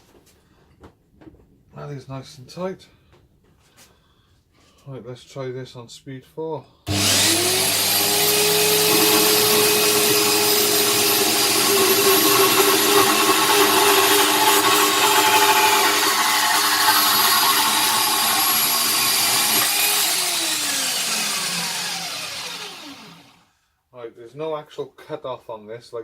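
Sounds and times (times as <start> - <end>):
bandsaw cutting steel tube: 6.9 - 23.5.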